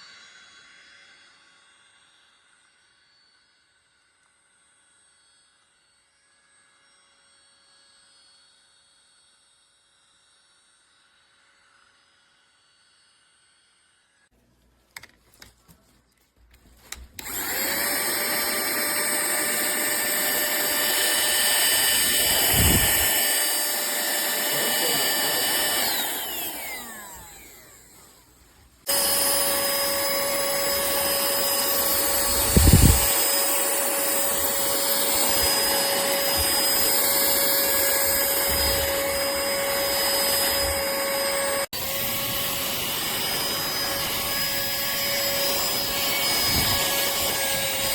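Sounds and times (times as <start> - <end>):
handheld vacuum cleaner whining: 16.9 - 47.9.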